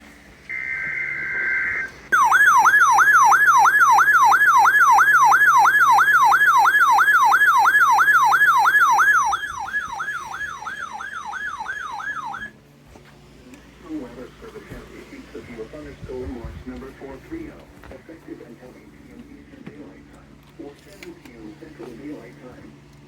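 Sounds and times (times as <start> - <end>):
alert data tones: 0.5 - 12.5
sweeping siren-like alert tone: 0.5 - 12.5.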